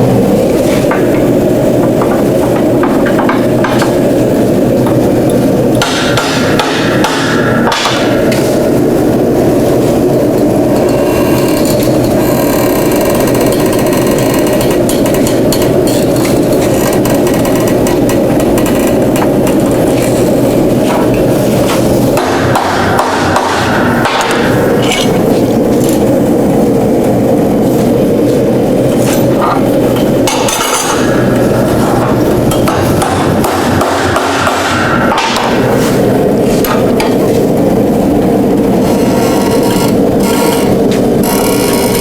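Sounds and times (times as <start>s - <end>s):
loud steady rushing noise: 0.0s - 42.0s
hammer striking steel bar: 5.8s - 8.4s, 22.2s - 25.2s, 32.5s - 35.7s.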